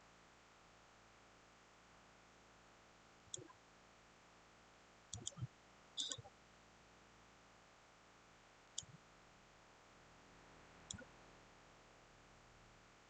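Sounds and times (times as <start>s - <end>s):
computer mouse clicks: 3.3s - 3.6s, 5.1s - 6.3s, 8.8s - 9.0s, 10.9s - 11.1s.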